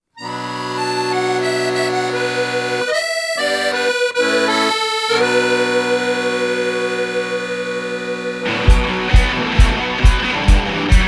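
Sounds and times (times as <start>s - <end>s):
accordion melody: 0.1s - 11.0s.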